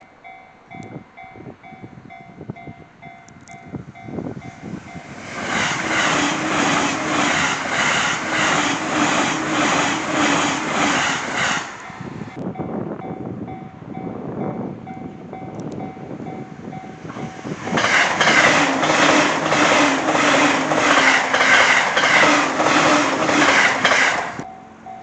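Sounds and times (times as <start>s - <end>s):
train passing at high speed: 0.0s - 25.0s
train cars clattering: 3.1s - 12.1s, 14.4s - 25.0s.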